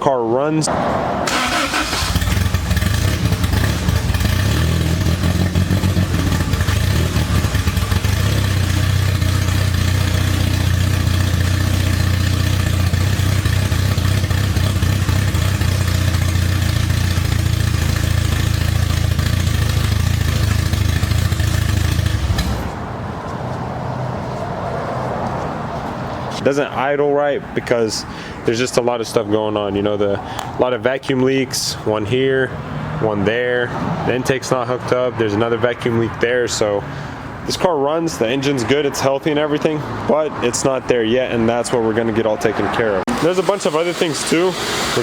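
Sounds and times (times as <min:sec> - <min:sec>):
car engine idling: 0:00.7 - 0:26.1, 0:40.9 - 0:45.0.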